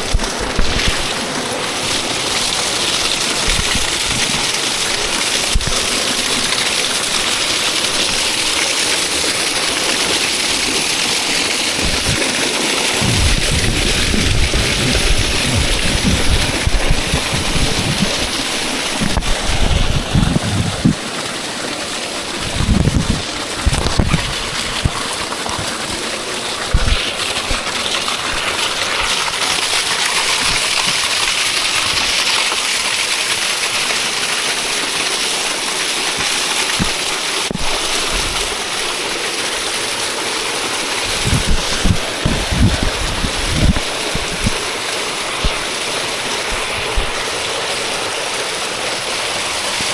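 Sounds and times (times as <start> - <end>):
waterfall rushing: 0.0 - 49.9
thumps on microphone: 13.0 - 21.0, 22.4 - 25.7, 26.7 - 27.6, 41.2 - 44.6.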